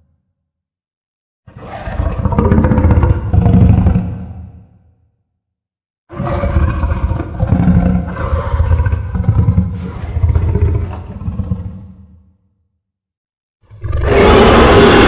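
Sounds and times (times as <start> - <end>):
monster roar: 13.7 - 15.0.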